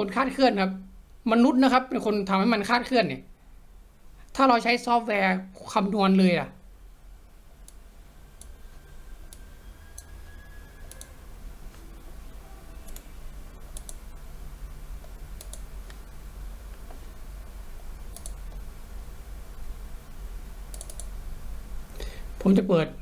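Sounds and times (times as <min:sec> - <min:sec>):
low steady hum: 0:00.0 - 0:23.0
computer mouse clicking: 0:07.6 - 0:08.6, 0:09.3 - 0:10.1, 0:10.8 - 0:11.8, 0:12.8 - 0:13.1, 0:13.7 - 0:14.1, 0:15.0 - 0:17.0, 0:18.1 - 0:18.7, 0:20.7 - 0:21.2.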